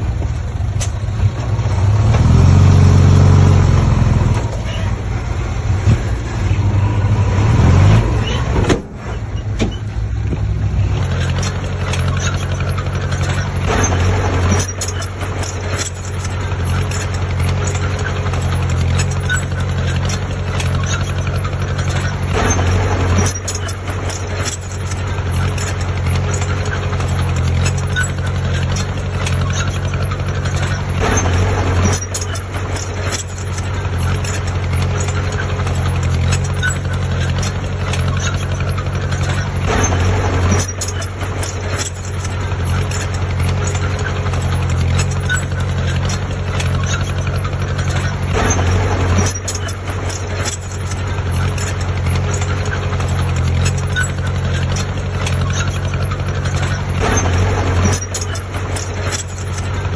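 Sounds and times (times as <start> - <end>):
heavy diesel engine running: 0.0 - 59.9.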